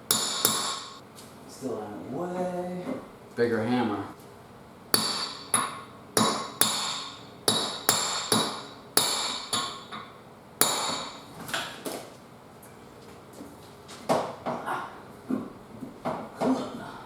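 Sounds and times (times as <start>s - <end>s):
hammer striking metal: 0.0s - 1.0s, 5.0s - 11.3s.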